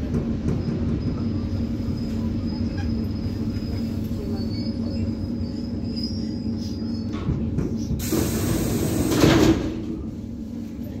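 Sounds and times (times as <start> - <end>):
train low rumble: 0.0 - 11.0
pneumatic door air hiss: 7.9 - 9.8.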